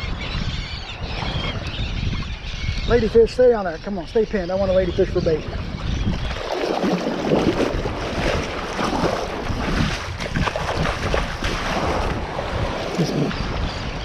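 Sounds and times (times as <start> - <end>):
wind buffeting microphone: 0.0 - 14.0
surf washing: 6.3 - 14.0.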